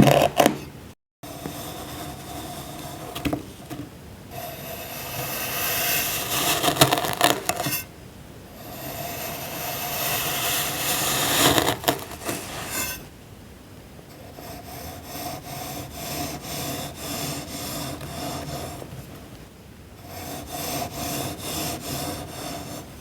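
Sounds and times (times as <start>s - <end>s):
tool scraping through sand: 4.3s - 7.9s, 8.7s - 13.1s, 20.0s - 23.0s.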